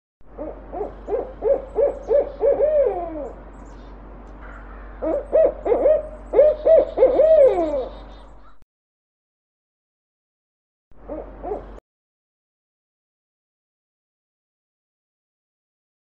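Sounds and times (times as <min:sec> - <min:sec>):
owl hooting: 0:00.3 - 0:03.9, 0:04.5 - 0:08.6, 0:11.0 - 0:11.8.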